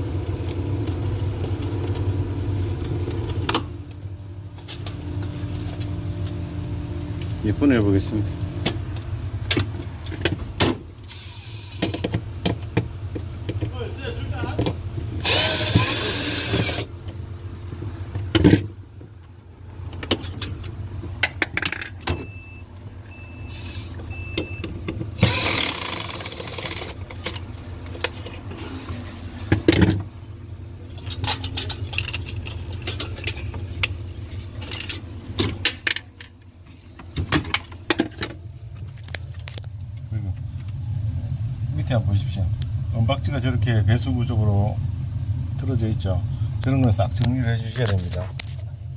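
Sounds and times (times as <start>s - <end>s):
refrigerator humming: 12.2s - 41.6s
knocks and clatter of handling: 17.7s - 22.4s, 26.5s - 30.1s, 30.9s - 39.8s
short electronic beeps: 22.2s - 24.6s.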